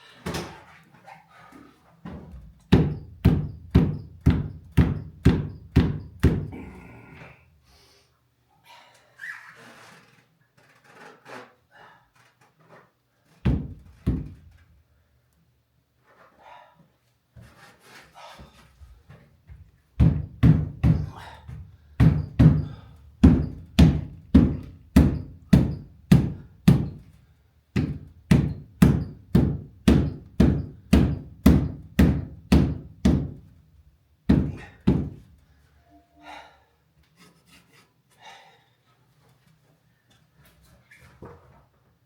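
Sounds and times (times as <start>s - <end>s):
dull knocks: 2.2s - 6.5s, 19.5s - 27.1s, 27.8s - 33.5s, 34.3s - 35.3s.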